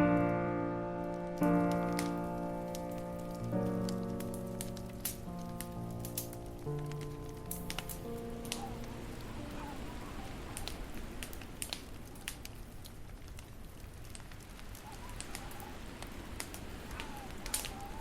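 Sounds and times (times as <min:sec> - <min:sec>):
piano notes: 0:00.0 - 0:11.5
wood fire crackling: 0:00.0 - 0:18.0.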